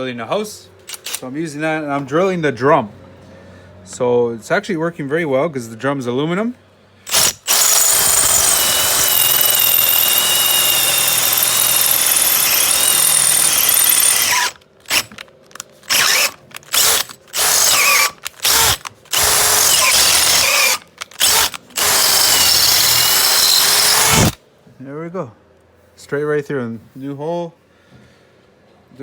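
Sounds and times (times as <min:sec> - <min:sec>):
power drill boring through metal: 0:07.1 - 0:15.2, 0:15.8 - 0:24.4.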